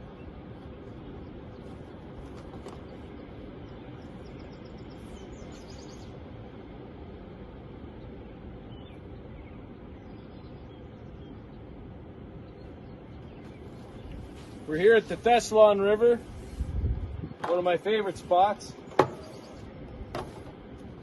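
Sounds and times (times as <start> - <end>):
rushing background noise: 0.0 - 21.0
small bird chirping: 2.8 - 6.2, 18.8 - 19.7.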